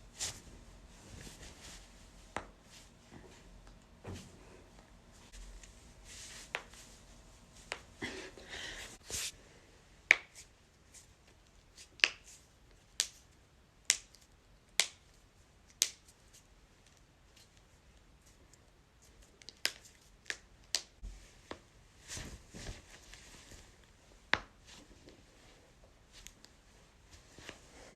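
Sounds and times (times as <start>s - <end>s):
soft rustling of handling: 0.0s - 8.0s, 21.0s - 27.9s.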